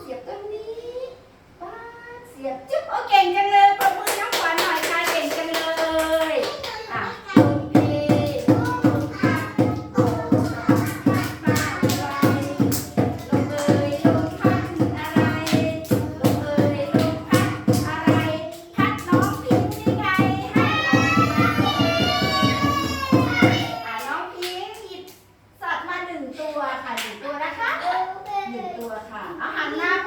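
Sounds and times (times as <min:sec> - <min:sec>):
children's song singing: 0:03.6 - 0:24.8
hand claps: 0:03.8 - 0:06.8, 0:08.1 - 0:25.2.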